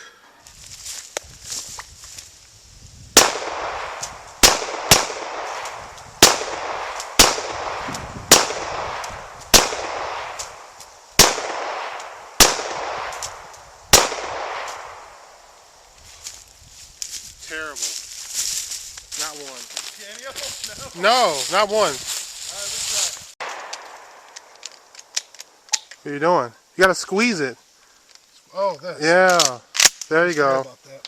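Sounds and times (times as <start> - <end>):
pistol shots echoing: 3.2 - 15.2.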